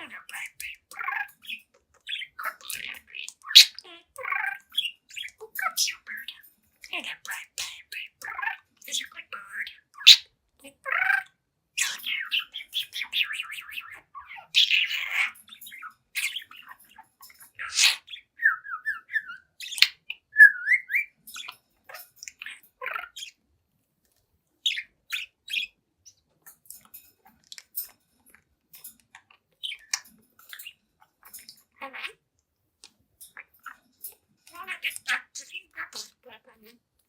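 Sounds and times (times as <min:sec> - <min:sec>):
budgerigar chattering: 0:00.0 - 0:06.4, 0:07.1 - 0:10.3, 0:10.9 - 0:16.9, 0:17.5 - 0:23.4, 0:34.5 - 0:36.8.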